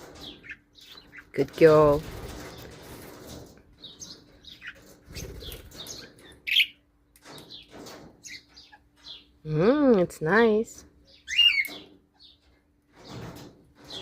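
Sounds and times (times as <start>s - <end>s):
parrots chirping: 3.8s - 6.8s, 11.1s - 12.4s.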